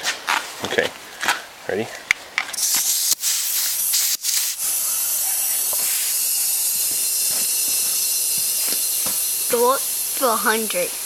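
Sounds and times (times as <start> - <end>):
compressed air hissing: 2.6 - 11.0.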